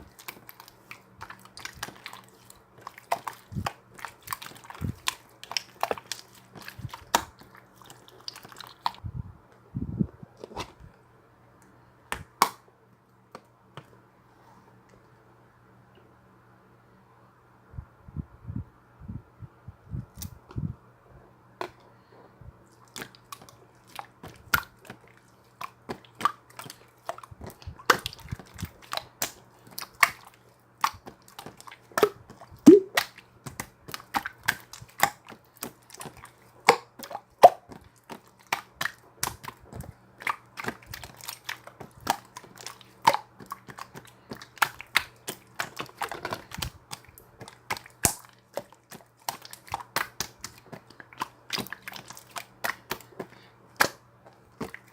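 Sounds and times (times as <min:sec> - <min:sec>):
slime squished by hand: 0:00.0 - 0:09.0, 0:22.8 - 0:54.9.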